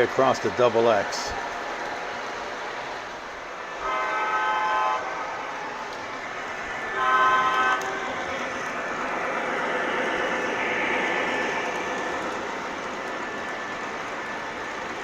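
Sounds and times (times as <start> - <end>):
model train rolling on track: 0.0 - 15.0
train horn blasts: 3.8 - 8.7.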